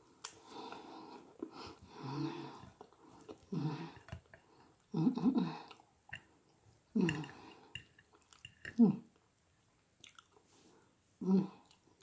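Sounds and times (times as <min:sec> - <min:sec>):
woman humming mmm: 0:04.9 - 0:05.6
mouth clicks and chewing: 0:10.0 - 0:10.5.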